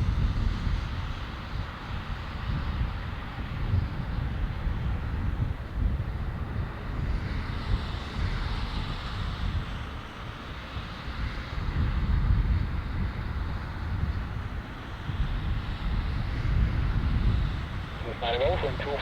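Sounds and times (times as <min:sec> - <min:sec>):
wind rumble on microphone: 0:00.0 - 0:09.9, 0:11.2 - 0:19.0
jet engine rush: 0:18.0 - 0:19.0.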